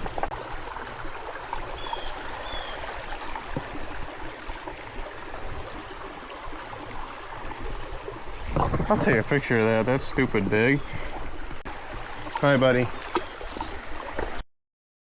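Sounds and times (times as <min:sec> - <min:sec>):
creek water running: 0:00.0 - 0:14.4.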